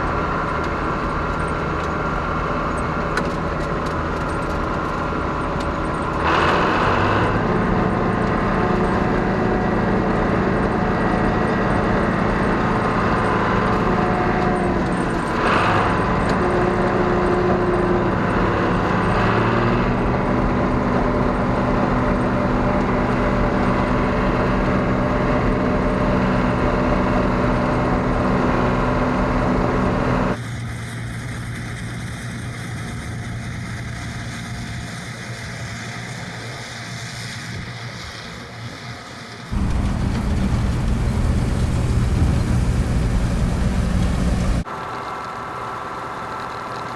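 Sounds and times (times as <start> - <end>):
combine harvester running: 39.5 - 44.7.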